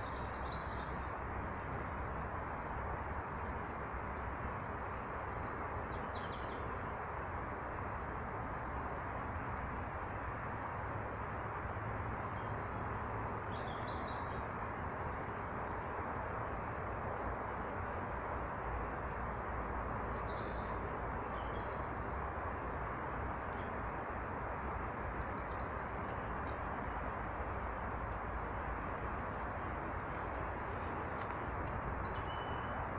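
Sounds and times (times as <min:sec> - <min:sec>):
small birds chirping: 0:29.3 - 0:32.9.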